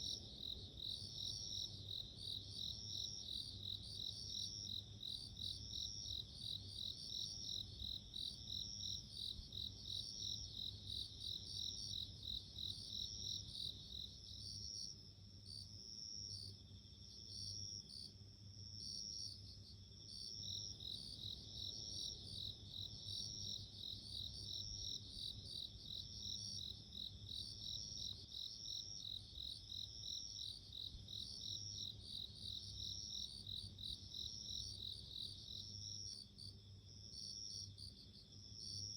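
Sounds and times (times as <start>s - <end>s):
crickets chirping: 18.9s - 38.9s.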